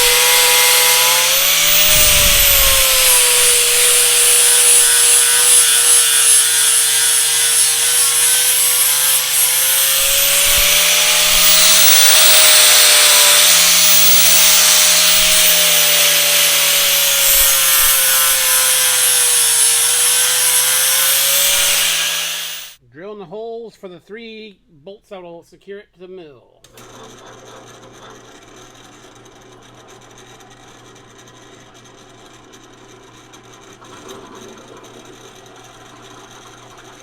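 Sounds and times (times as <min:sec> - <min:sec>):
power tool motor whine: 0:00.0 - 0:22.8.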